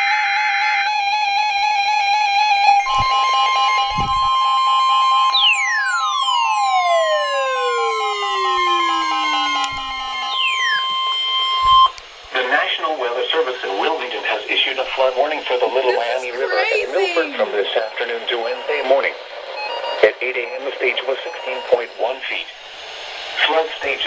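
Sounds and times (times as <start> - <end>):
electronic alarm tone: 2.5 - 11.9, 16.0 - 21.9.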